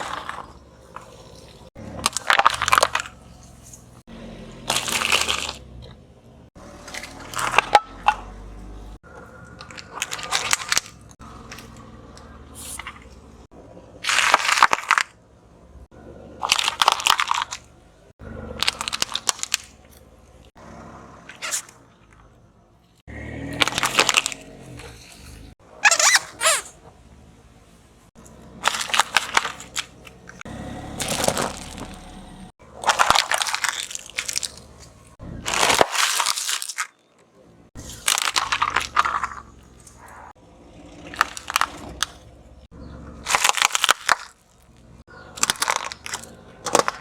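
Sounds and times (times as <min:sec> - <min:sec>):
objects crunching under tyre: 0:00.0 - 0:27.3, 0:28.1 - 0:47.0.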